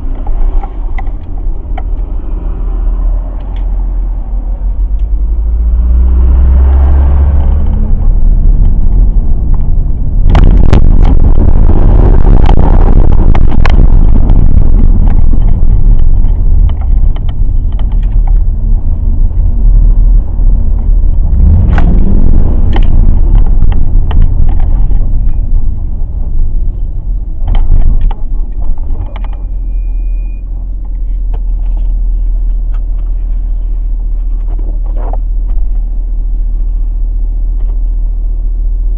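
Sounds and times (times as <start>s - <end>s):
car engine low rumble: 0.0s - 38.9s.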